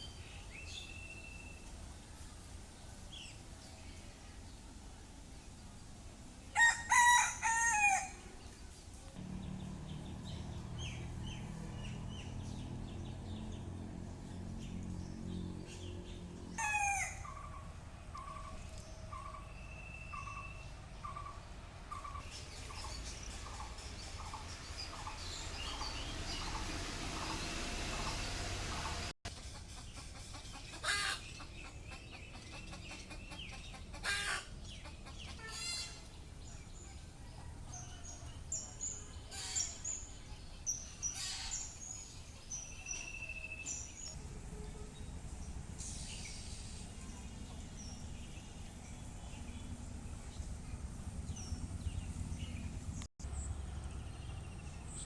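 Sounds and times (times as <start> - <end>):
rooster crowing: 6.5 - 8.3, 16.6 - 17.5.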